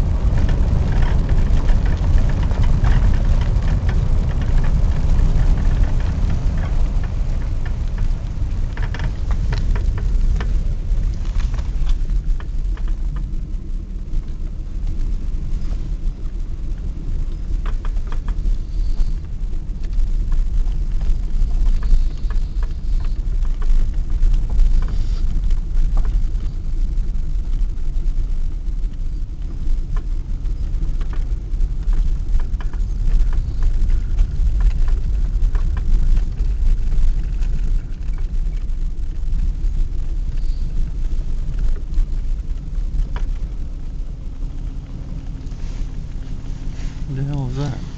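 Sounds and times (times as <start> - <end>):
vehicle engine and road noise: 0.0 - 47.9
small clicks: 28.8 - 46.3.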